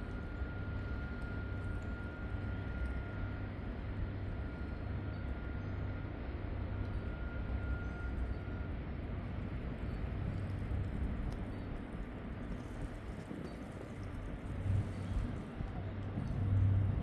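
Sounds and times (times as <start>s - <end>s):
traffic rumble: 8.9s - 17.0s.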